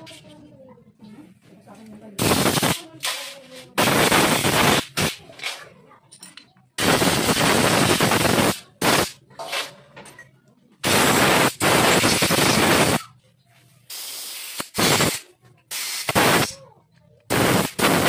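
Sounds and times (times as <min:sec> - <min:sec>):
air blow gun hissing: 0:02.2 - 0:05.2, 0:13.9 - 0:16.6, 0:17.3 - 0:18.0.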